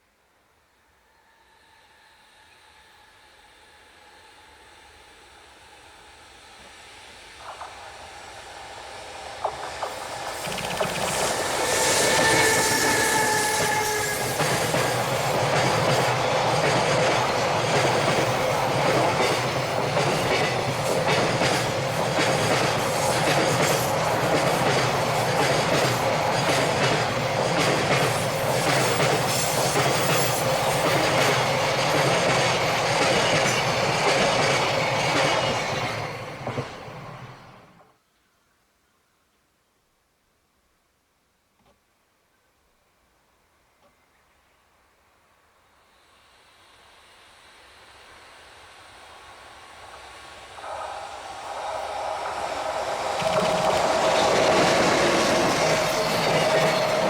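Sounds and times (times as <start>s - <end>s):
electric locomotive passing: 0.9s - 38.0s, 45.6s - 57.0s
train wagons clacking over rail joints: 52.6s - 57.0s.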